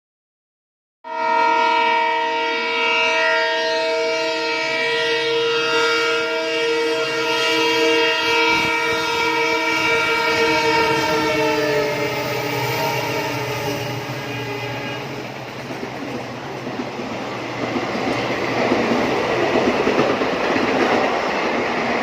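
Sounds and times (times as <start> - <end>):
locomotive horn blast: 1.0 - 15.4
low train rumble: 1.1 - 22.0.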